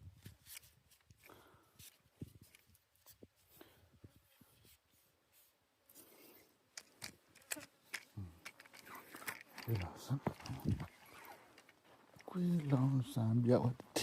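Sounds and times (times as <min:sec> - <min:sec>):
light rubbing or scratching: 0:01.8 - 0:13.8.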